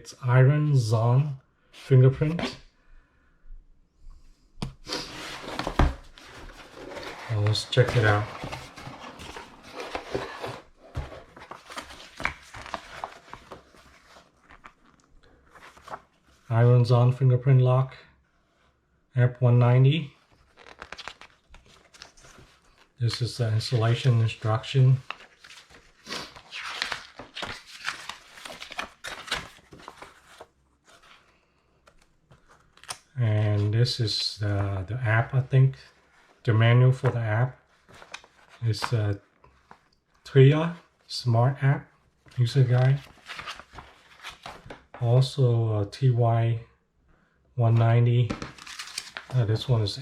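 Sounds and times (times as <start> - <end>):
paper rustling and crinkling: 4.9 - 16.4, 20.2 - 33.0, 37.0 - 39.9, 42.2 - 45.0, 48.3 - 50.0.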